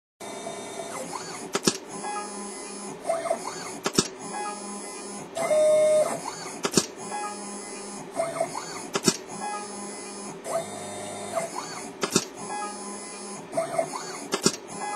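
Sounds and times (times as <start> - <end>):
stepper motors whining: 0.3 - 14.9
sharp click: 1.5 - 1.9, 3.8 - 4.2, 6.6 - 7.0, 8.7 - 9.3, 11.4 - 12.4, 14.3 - 14.7.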